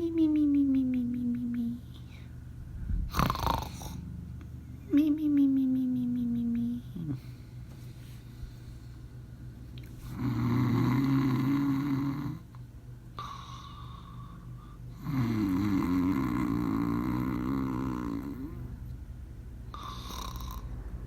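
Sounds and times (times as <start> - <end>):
loud snores: 3.1 - 4.0, 10.1 - 12.4, 15.0 - 18.6, 19.7 - 20.7.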